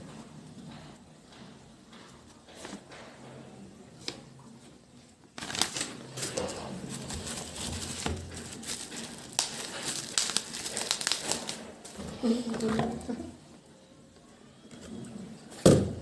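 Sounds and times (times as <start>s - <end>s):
packaging crinkling and rustling: 5.3s - 12.2s.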